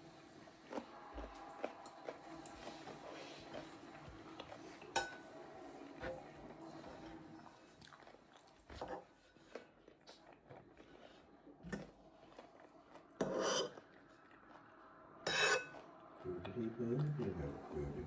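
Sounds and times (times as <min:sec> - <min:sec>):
chewing: 0:00.2 - 0:15.0
cutlery scraping on a plate: 0:04.9 - 0:05.2, 0:13.2 - 0:13.8, 0:15.2 - 0:15.8.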